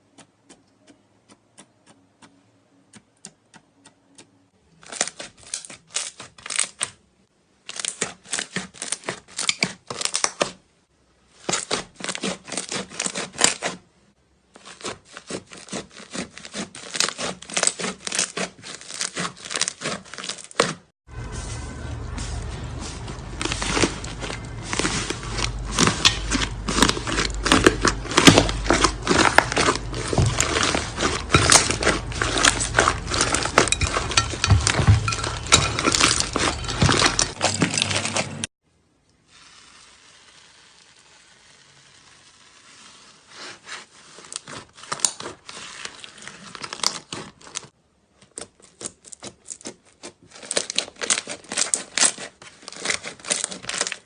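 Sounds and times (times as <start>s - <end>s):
slime crackling and popping: 23.3s - 38.0s, 48.3s - 54.0s.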